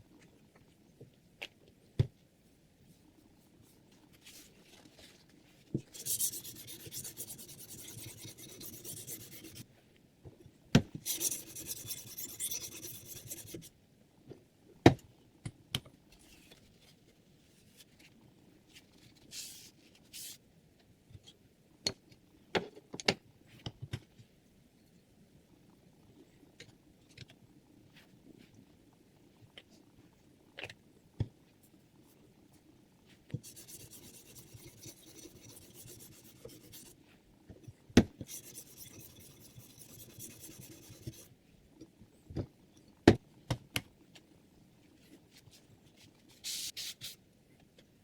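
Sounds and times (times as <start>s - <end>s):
sharpening stone rasping on blade: 11.1s - 13.6s, 33.5s - 36.9s, 38.3s - 41.3s.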